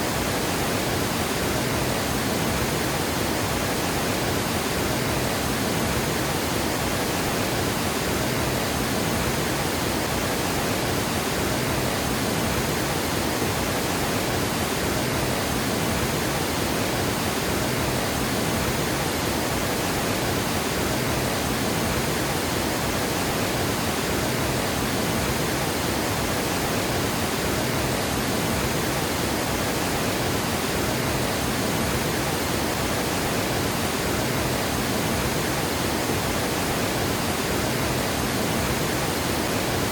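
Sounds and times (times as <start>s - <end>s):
water rushing over dam spillway: 0.0s - 39.9s.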